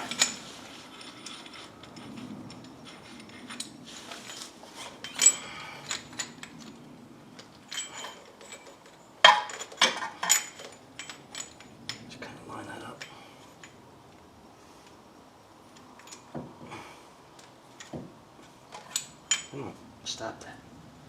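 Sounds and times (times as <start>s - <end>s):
metal tools clinking: 0.0s - 13.8s, 18.7s - 19.6s.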